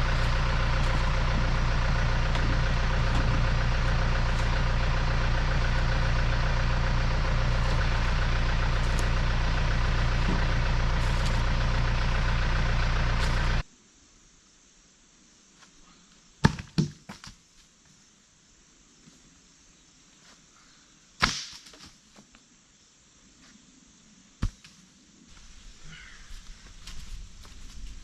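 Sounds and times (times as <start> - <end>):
tractor diesel engine running: 0.0 - 13.6.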